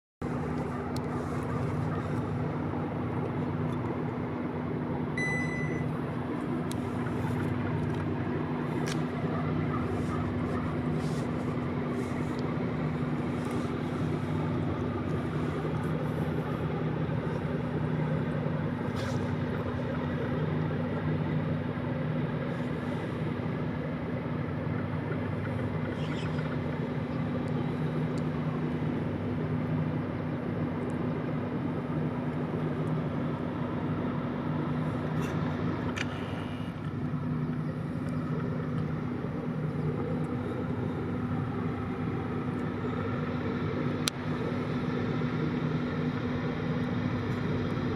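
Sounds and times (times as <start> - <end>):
diesel engines droning: 0.2 - 47.9
short high-pitched tone: 5.2 - 5.9.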